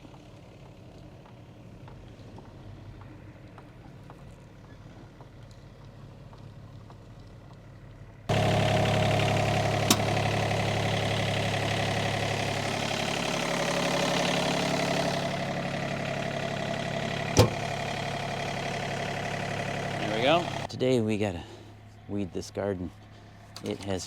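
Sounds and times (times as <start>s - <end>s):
diesel engine idling: 0.0s - 24.0s
sharp knocks: 17.4s - 17.7s.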